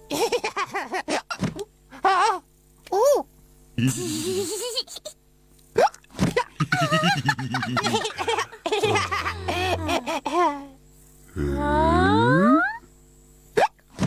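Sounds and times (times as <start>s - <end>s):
cartoon voices laughing: 3.8s - 5.2s, 6.4s - 10.8s
hiccups: 5.7s - 6.1s, 13.6s - 13.9s
hiccup-like yelp: 13.6s - 13.8s.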